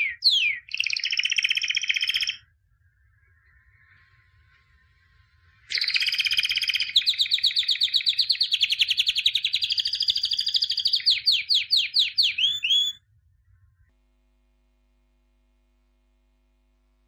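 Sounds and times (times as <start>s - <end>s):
songbird trilling: 0.0s - 2.4s, 5.7s - 13.0s.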